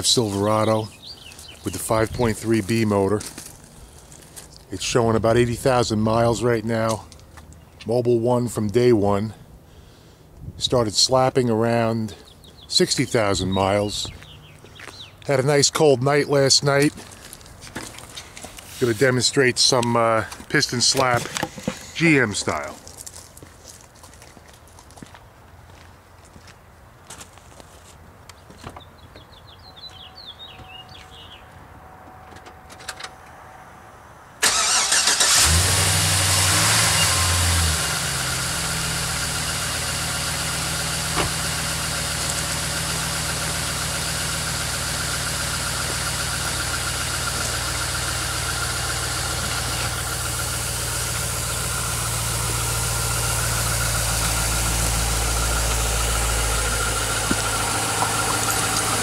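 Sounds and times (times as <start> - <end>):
engine cranking and starting: 34.4 - 59.0
engine idling with light knocking: 39.1 - 59.0.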